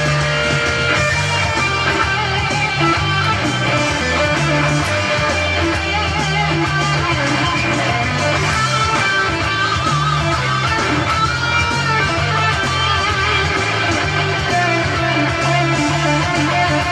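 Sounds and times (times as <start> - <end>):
backing track: 0.0 - 16.9
bass line: 0.0 - 16.9
electric guitar playing: 0.0 - 16.9.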